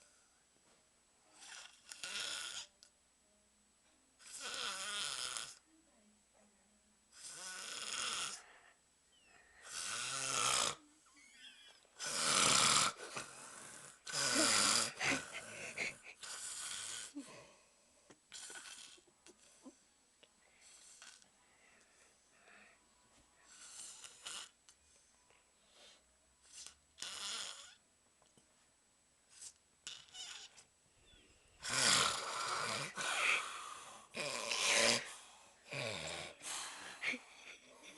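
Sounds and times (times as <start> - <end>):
man snoring loudly: 4.3 - 5.6, 7.2 - 8.4, 9.6 - 10.8, 12.0 - 17.2, 27.0 - 27.8, 31.6 - 37.1.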